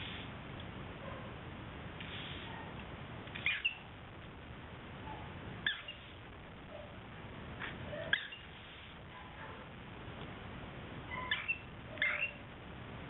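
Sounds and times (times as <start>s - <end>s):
cockatiel chirping: 3.3s - 3.9s, 5.6s - 6.1s, 8.1s - 8.5s, 11.1s - 12.4s.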